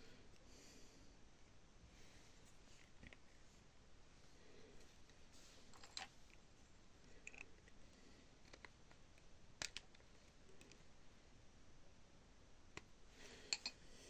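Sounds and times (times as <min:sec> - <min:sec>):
small tools clicking and tapping: 0:13.5 - 0:13.8.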